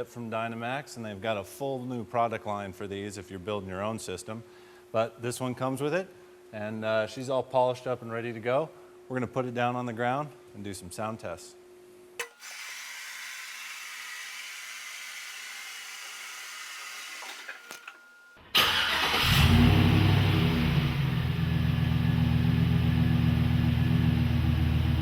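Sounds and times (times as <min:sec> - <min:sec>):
small clicks: 0:12.2 - 0:12.7, 0:13.4 - 0:18.4
truck engine starting and idling: 0:12.2 - 0:25.0.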